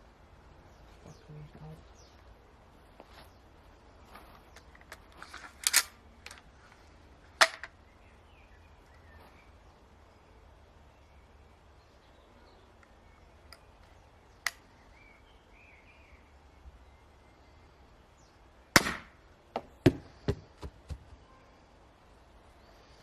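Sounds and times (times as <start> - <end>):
faint bird chirps: 7.8 - 18.5, 21.2 - 23.0
crossbow shot crack: 18.8 - 19.2.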